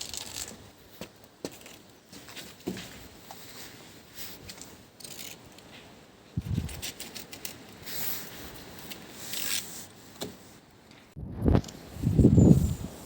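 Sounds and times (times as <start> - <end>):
materials scraping and rustling: 0.0 - 0.8, 1.5 - 10.6.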